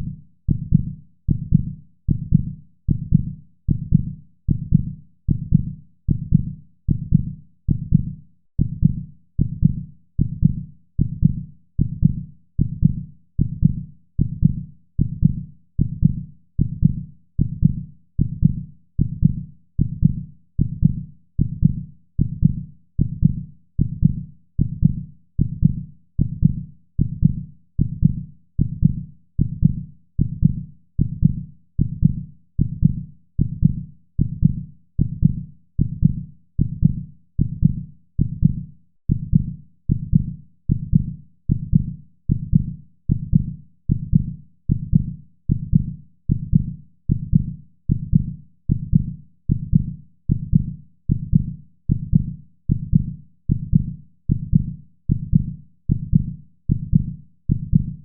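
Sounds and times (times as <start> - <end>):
heartbeat thumps: 0.0 - 58.0.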